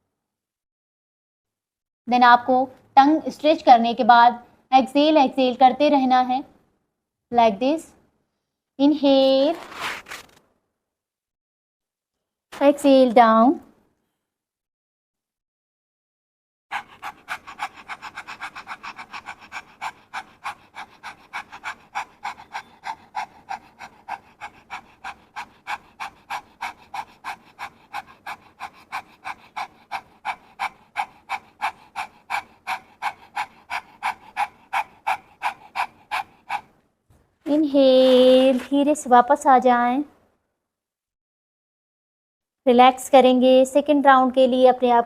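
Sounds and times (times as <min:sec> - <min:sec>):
woman panting rapidly: 0:16.7 - 0:36.8.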